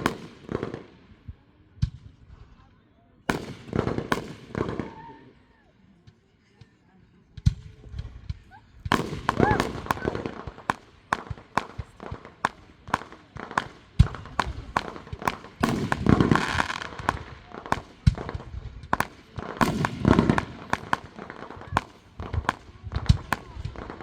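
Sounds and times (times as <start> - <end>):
fireworks bangs and pops: 0.0 - 2.7, 3.3 - 5.2, 6.1 - 24.0
heavy firework bursts: 8.8 - 24.0.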